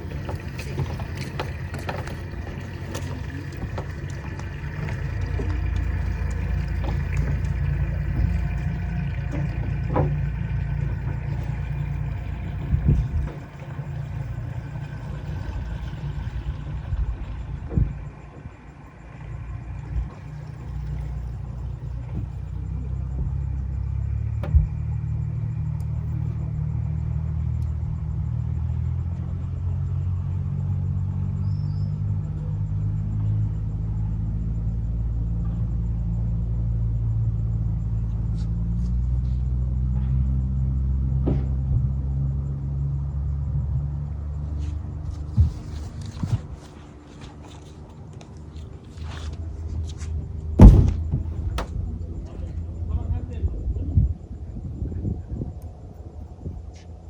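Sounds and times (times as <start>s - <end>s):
boat engine idling: 0.0s - 57.0s
brief knock: 50.6s - 51.8s.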